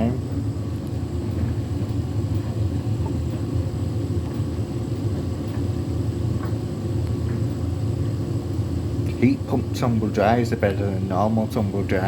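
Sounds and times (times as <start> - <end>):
tumble dryer humming: 0.0 - 12.0.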